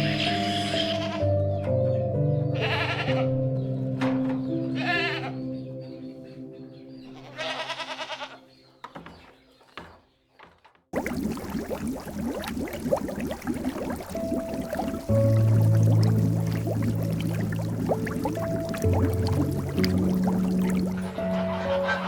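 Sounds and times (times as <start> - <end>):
quavering animal bleats: 0.0 - 1.3, 2.6 - 3.5, 4.7 - 5.5, 7.1 - 8.5
soft piano-like instrumental music: 0.0 - 8.8, 13.2 - 22.0.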